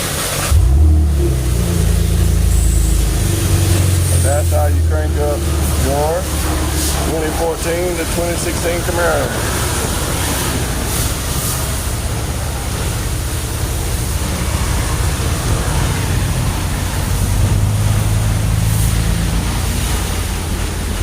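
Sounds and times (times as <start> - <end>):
car engine idling: 0.0 - 21.0
constant hiss: 1.4 - 21.0.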